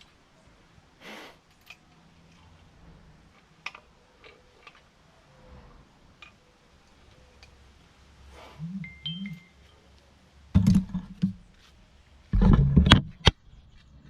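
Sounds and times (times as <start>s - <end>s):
tools clicking on engine parts: 3.3s - 4.9s
metal clink ringing: 8.8s - 9.6s.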